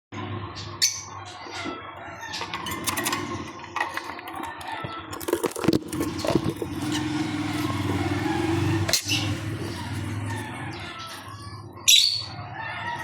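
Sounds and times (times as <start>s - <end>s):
lovebird chirps: 11.8s - 12.3s.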